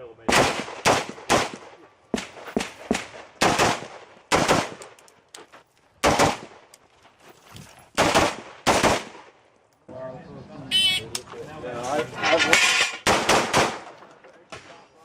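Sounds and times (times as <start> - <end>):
gunshots: 0.3 - 5.0, 6.0 - 6.7, 8.0 - 9.4, 12.9 - 14.8.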